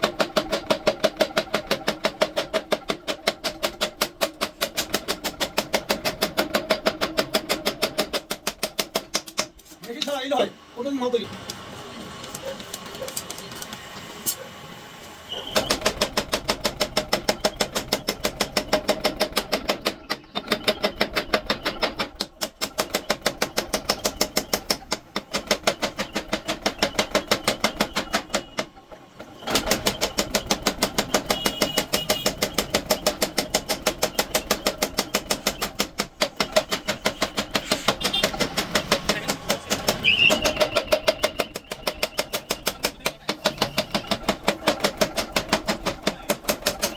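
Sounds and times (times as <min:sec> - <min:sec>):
power hammer pounding steel: 0:00.0 - 0:09.6, 0:15.3 - 0:46.9.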